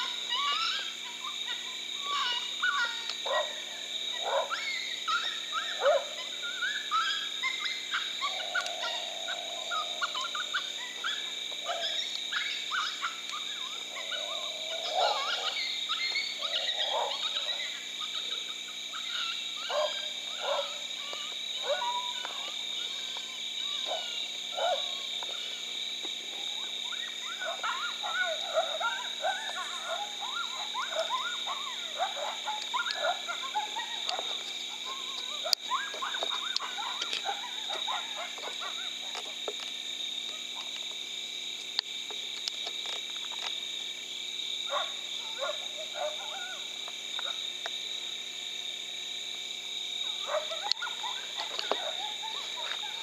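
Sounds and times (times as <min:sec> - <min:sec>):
chorus of animal calls: 0:00.0 - 0:41.3, 0:44.5 - 0:48.9, 0:49.8 - 0:53.0.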